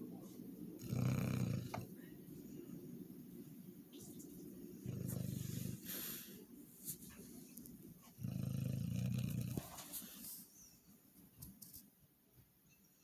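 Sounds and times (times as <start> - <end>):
dog snoring: 0.8 - 1.9, 4.8 - 6.3, 8.2 - 9.8
dog breathing quietly: 4.0 - 7.6.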